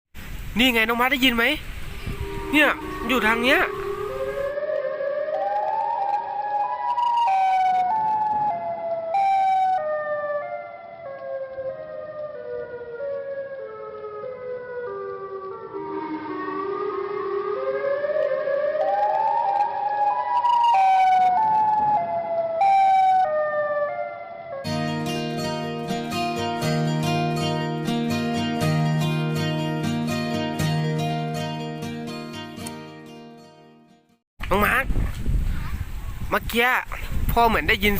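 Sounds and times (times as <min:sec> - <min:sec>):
wailing siren: 0:01.8 - 0:31.9.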